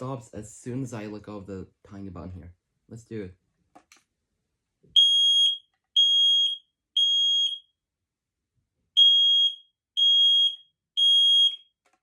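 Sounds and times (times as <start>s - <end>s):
smoke alarm beeping: 5.0s - 7.7s, 9.0s - 11.8s.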